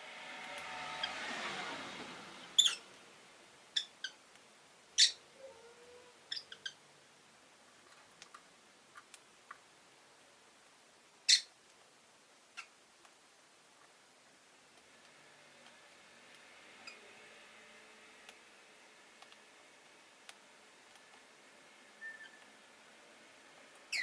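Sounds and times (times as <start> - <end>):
car passing: 0.0 - 3.6
lovebirds chirping: 2.4 - 3.0, 3.7 - 4.2, 4.9 - 6.9, 11.2 - 11.6, 21.9 - 22.6, 23.8 - 24.0.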